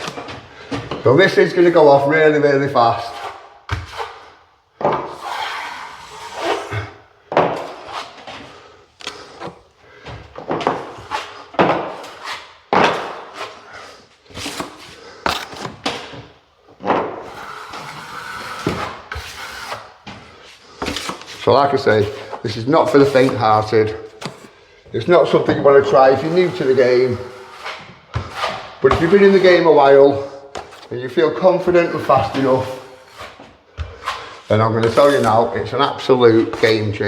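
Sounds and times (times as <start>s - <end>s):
trowel scraping filler on plasterboard: 3.0s - 4.4s, 5.0s - 7.0s, 7.6s - 8.4s, 10.7s - 16.2s, 17.2s - 24.5s, 26.0s - 29.9s, 30.5s - 36.9s.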